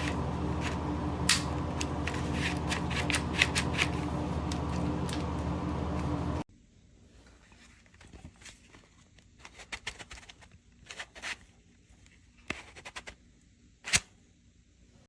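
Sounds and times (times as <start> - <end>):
handling scrapes and rubs: 0.0 - 6.4.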